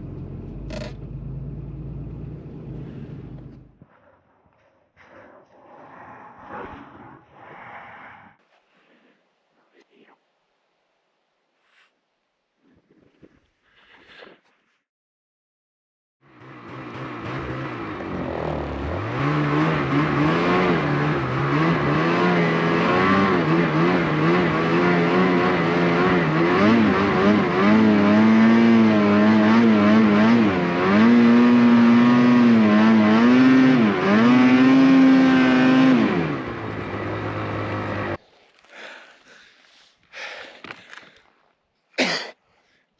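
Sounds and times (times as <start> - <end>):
vehicle engine revving: 0.0 - 3.8, 16.2 - 38.2.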